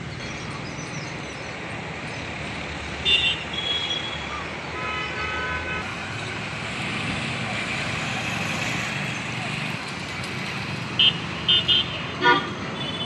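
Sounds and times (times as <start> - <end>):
road traffic: 0.0 - 13.0
vehicle horn: 3.0 - 4.2, 11.0 - 13.0.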